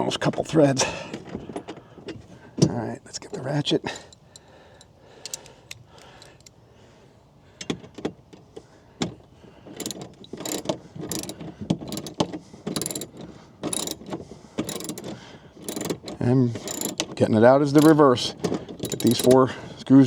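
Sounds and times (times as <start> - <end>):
hand ratchet clicking: 4.0 - 6.6, 9.8 - 19.5.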